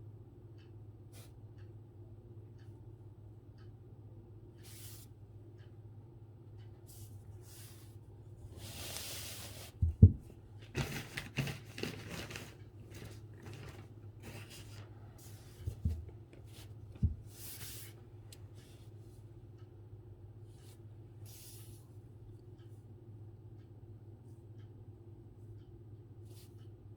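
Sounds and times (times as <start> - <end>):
brush strokes on paper: 6.9 - 7.9, 8.6 - 9.9, 16.6 - 18.0.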